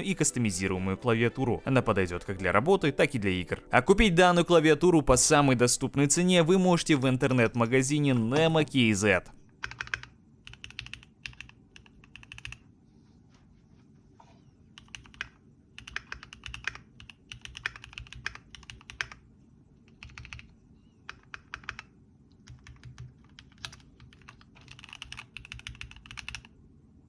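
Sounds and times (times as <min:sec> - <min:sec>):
mechanical keyboard typing: 0:09.5 - 0:12.6, 0:14.8 - 0:19.2, 0:19.9 - 0:26.6.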